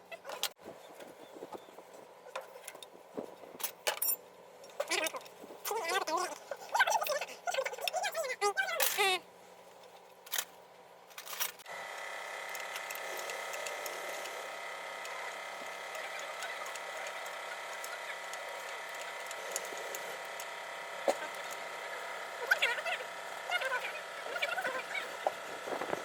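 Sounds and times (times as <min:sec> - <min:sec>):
machine whining steadily: 0:11.1 - 0:26.0.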